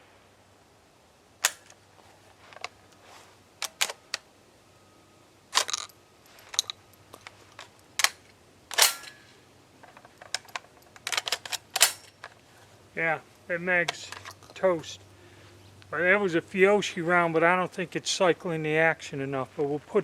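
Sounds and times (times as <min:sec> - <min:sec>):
shotgun action metallic clicks: 0:01.4 - 0:01.8, 0:03.6 - 0:04.3, 0:06.5 - 0:09.2, 0:09.8 - 0:12.4.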